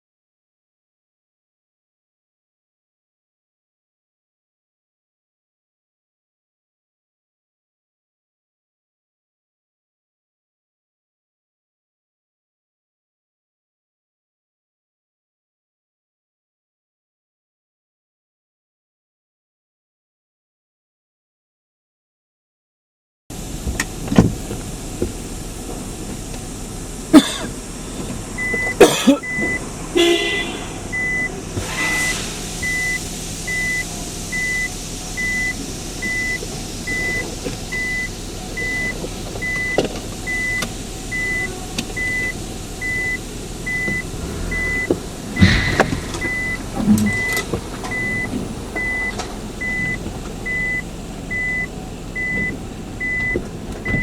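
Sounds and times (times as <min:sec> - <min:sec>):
engine running: 0:23.3 - 0:54.0
sharp knocks and clunks: 0:23.6 - 0:25.2, 0:44.8 - 0:48.5
vehicle reversing alarm beeping: 0:27.2 - 0:54.0.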